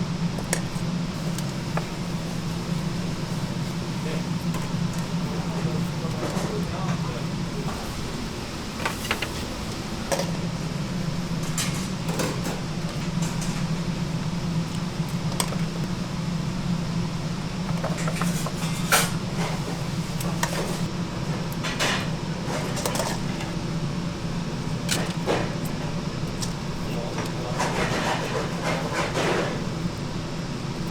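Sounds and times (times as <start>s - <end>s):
low machine hum: 0.0s - 30.9s
utensils and dishes clinking: 17.7s - 20.9s.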